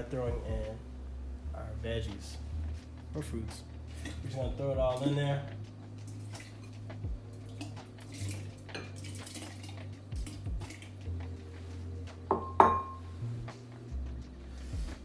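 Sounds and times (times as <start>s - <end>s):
dishes and utensils clattering: 7.5s - 10.9s, 12.3s - 13.0s.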